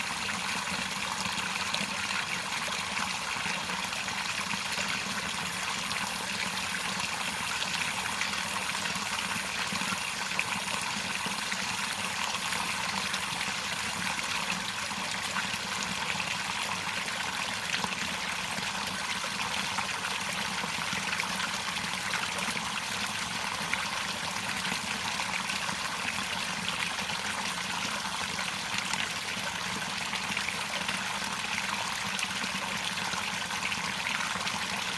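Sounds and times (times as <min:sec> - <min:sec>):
running water flowing: 0:00.0 - 0:16.8.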